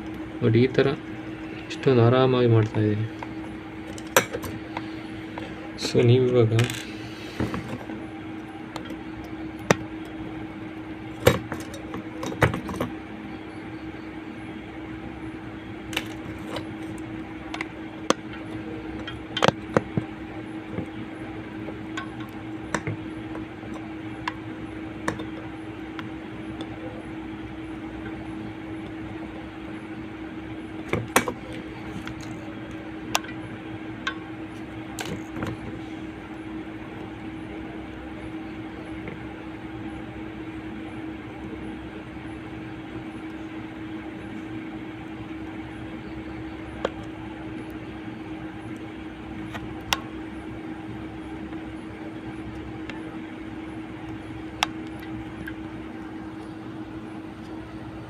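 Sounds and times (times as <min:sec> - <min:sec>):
low electrical hum: 0:00.0 - 0:58.0
metal tools tapping circuit board: 0:03.9 - 0:04.6, 0:09.6 - 0:10.2, 0:21.6 - 0:26.8, 0:30.9 - 0:32.3.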